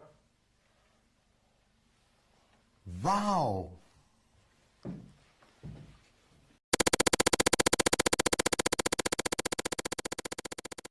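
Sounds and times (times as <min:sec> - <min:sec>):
falling voice-like sound: 0:02.9 - 0:03.9
rapidly pulsing synthesizer tone: 0:06.7 - 0:10.9.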